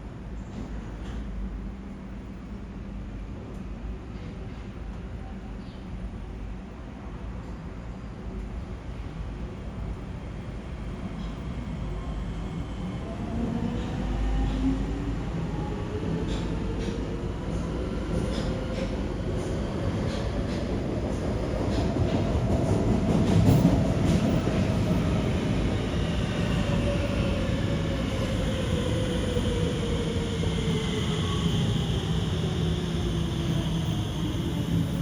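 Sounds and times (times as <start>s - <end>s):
train wheels rumbling on rail: 0.0s - 5.9s, 7.2s - 35.0s.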